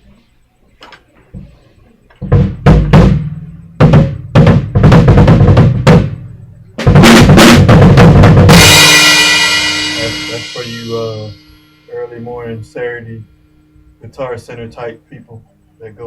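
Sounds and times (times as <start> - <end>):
drum groove with cymbals: 2.2 - 14.0
heavy drum strokes: 2.2 - 14.0.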